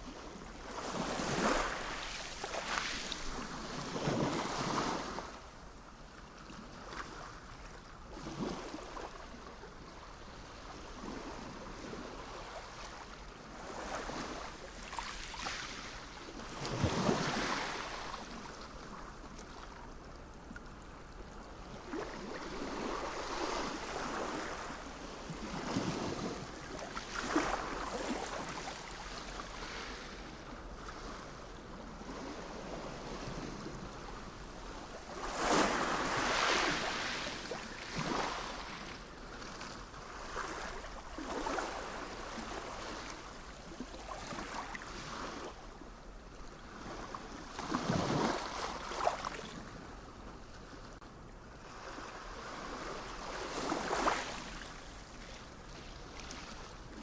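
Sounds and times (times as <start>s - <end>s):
sea waves washing in: 32.0s - 45.6s.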